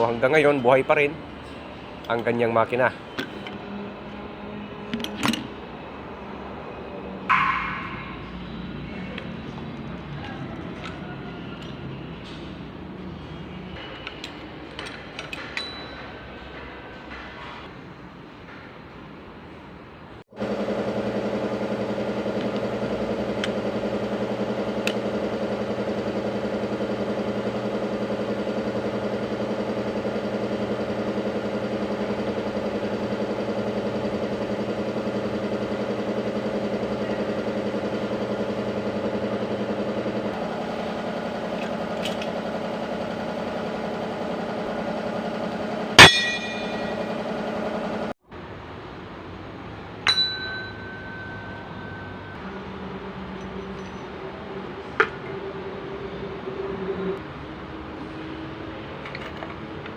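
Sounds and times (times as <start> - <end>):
sharp metallic clang: 7.3 - 8.4, 46.0 - 47.2, 50.0 - 52.1
diesel engine running: 20.3 - 48.2.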